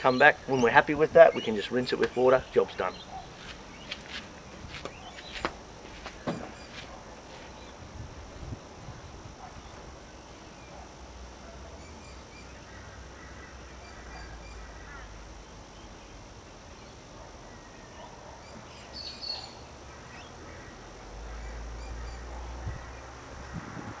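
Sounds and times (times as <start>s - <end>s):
faint bird calls: 11.7s - 15.4s.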